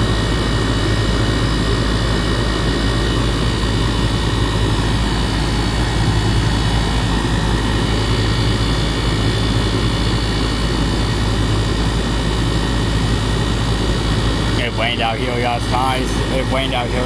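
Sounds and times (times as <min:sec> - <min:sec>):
compressor humming: 0:00.0 - 0:17.0
condenser fan rushing air: 0:00.0 - 0:17.0.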